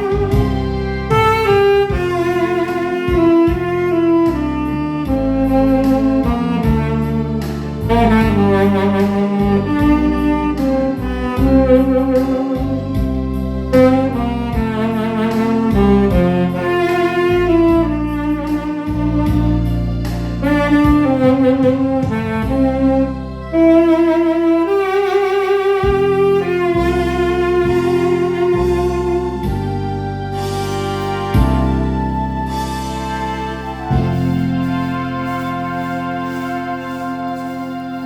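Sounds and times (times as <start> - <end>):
bass line accompaniment: 0.0 - 38.0
saxophone slow melody: 0.0 - 38.0.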